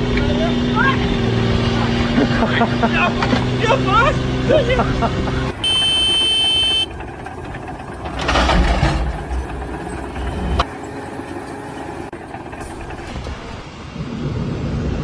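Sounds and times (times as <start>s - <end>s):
vehicle engine running: 0.0s - 15.0s
noisy rush: 11.8s - 15.0s.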